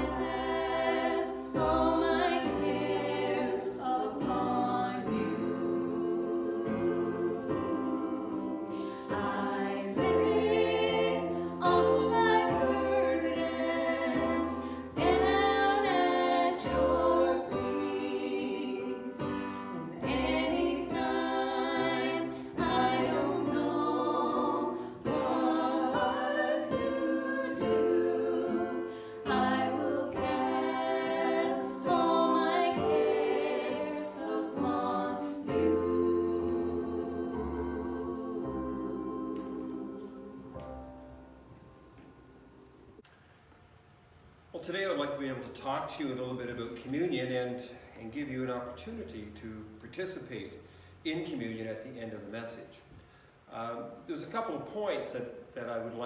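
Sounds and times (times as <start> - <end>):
voices singing worship song: 0.0 - 41.4.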